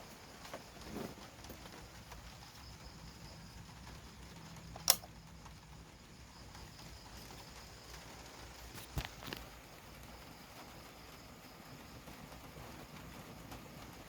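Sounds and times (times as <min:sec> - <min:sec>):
sharp click: 0:04.8 - 0:05.1.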